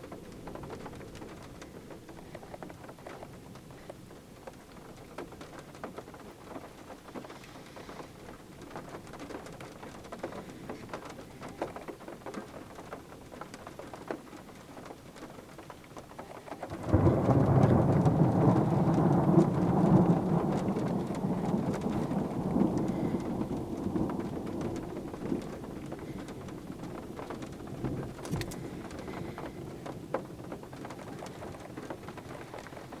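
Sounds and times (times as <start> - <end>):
rain pattering: 0.0 - 33.0
thunderclap and rolling thunder: 16.7 - 33.0.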